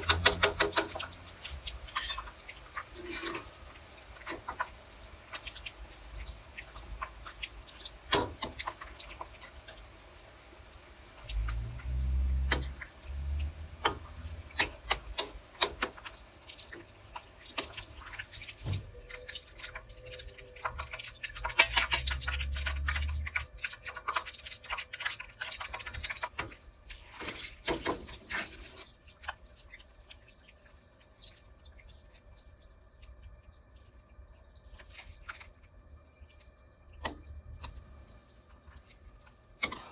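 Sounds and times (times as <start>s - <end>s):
kitchen utensils clicking and knocking: 0.0s - 1.2s, 21.4s - 22.9s.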